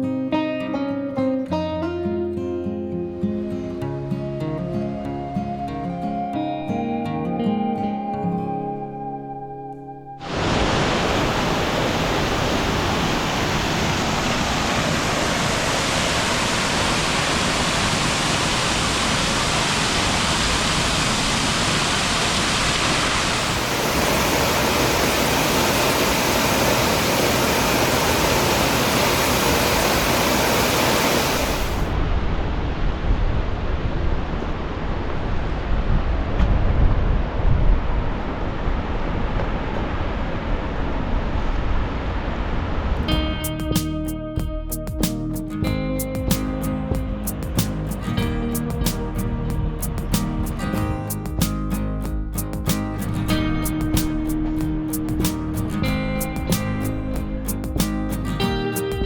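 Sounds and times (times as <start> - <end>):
waterfall roaring: 10.2 - 43.1
wind on microphone: 10.2 - 51.4.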